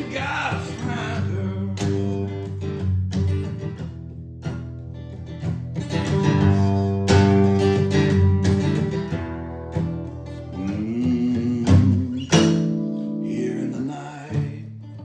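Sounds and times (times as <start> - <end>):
acoustic guitar strumming chords: 0.0 - 15.0.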